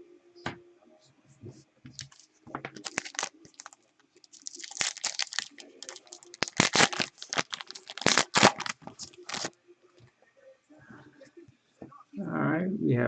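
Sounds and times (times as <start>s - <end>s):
foil wrapper tearing and crinkling: 2.0s - 2.2s, 2.8s - 9.5s.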